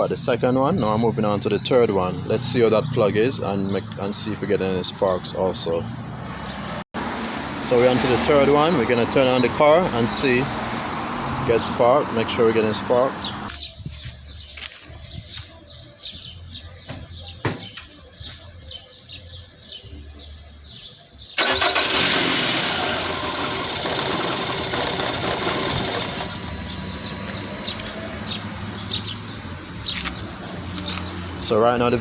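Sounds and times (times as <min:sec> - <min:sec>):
car engine cranking and running: 0:21.4 - 0:26.8.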